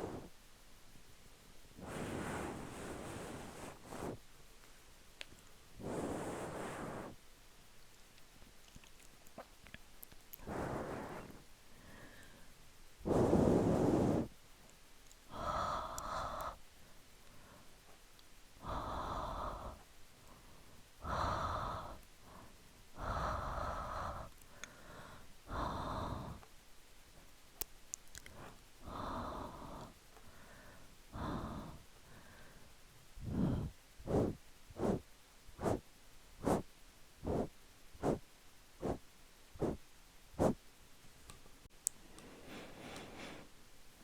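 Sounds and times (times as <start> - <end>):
person breathing slowly: 0.0 - 0.4, 1.8 - 4.2, 5.8 - 7.2, 10.4 - 14.4, 15.2 - 18.0, 18.6 - 26.5, 28.2 - 35.8, 36.4 - 38.2, 38.8 - 39.0, 39.6 - 39.8, 40.4 - 40.6, 42.1 - 43.6.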